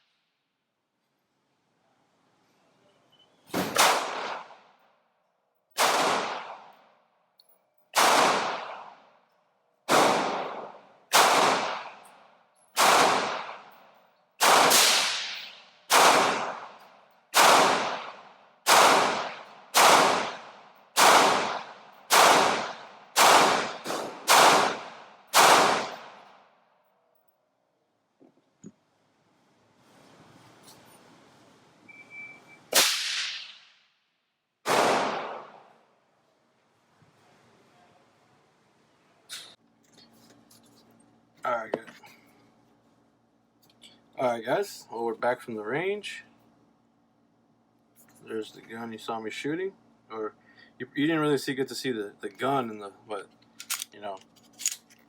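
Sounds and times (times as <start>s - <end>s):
pistol shots: 3.6s - 4.7s, 5.8s - 6.8s, 8.0s - 9.0s, 9.9s - 12.1s, 12.8s - 13.8s, 14.4s - 26.3s, 32.7s - 33.7s, 34.6s - 35.7s.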